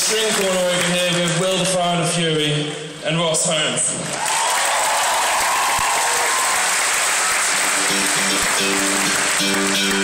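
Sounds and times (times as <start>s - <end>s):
audience applauding: 0.0s - 1.7s, 4.0s - 10.0s
band playing: 7.2s - 10.0s.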